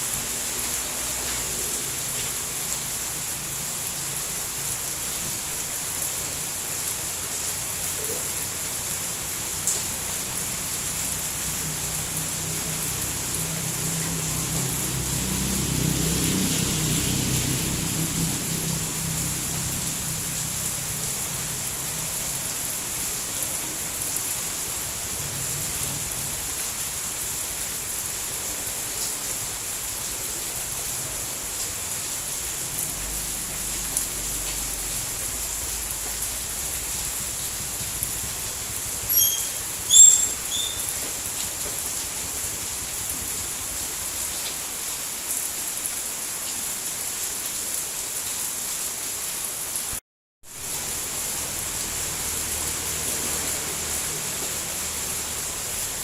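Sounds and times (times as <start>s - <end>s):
steady rain hiss: 0.0s - 56.0s
short high chirps: 39.1s - 40.9s.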